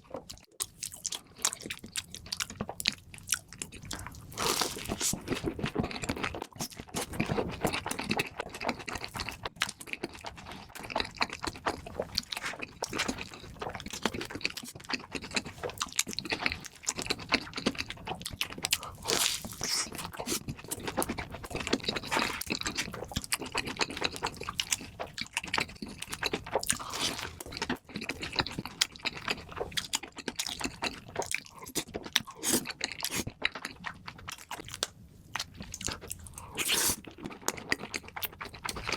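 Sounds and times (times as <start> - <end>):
chewing crunchy food: 0.0 - 38.9.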